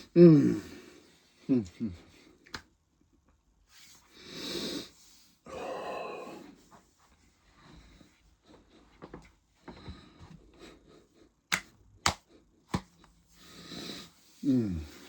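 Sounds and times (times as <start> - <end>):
heavy breathing: 4.1 - 6.7, 13.2 - 15.0.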